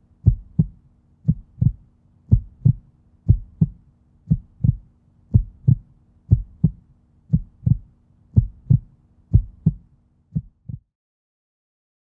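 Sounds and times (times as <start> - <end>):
faint low hum: 0.0 - 10.8
heartbeat thumps: 0.2 - 10.9.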